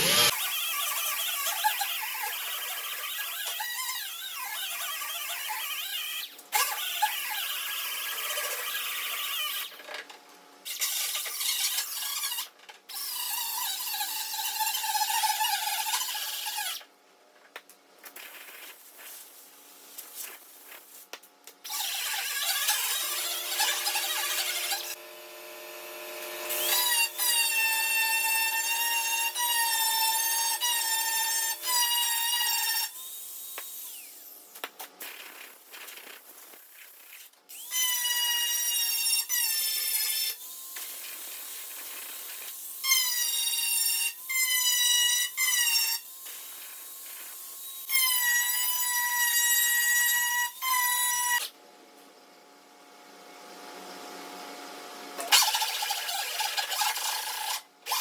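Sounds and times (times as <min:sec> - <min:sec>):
grinder grinding steel: 0:00.0 - 0:09.8, 0:20.6 - 0:32.9, 0:55.2 - 0:58.0.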